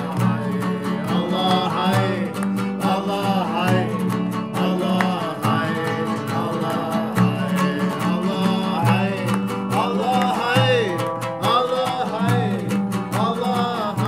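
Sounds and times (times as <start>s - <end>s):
plucked guitar music: 0.0s - 14.0s.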